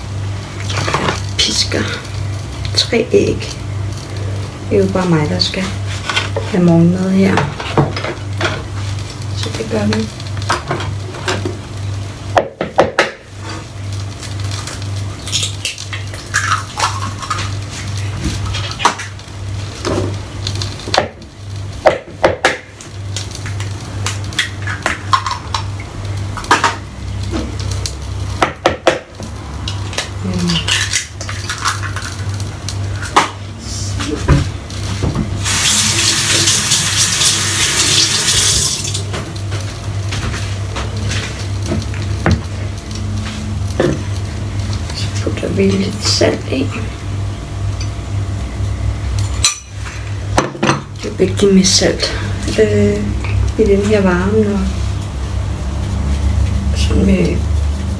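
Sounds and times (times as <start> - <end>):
water tap running: 34.5 - 39.5.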